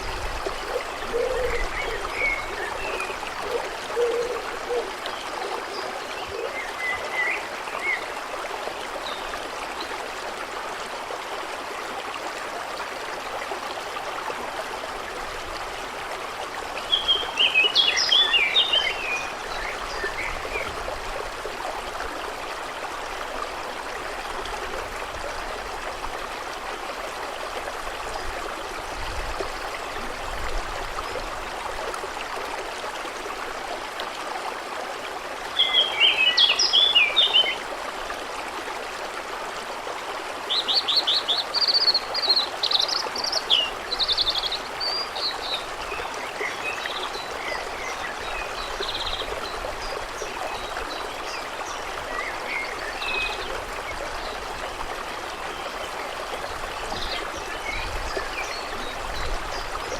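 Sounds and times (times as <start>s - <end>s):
stream flowing: 0.0s - 59.9s
bird song: 0.7s - 8.2s, 16.8s - 20.8s, 35.6s - 37.6s, 40.5s - 53.5s.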